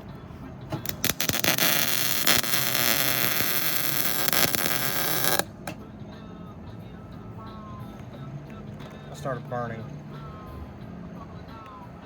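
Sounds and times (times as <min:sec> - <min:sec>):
welding arc crackling hiss: 0:00.8 - 0:05.6.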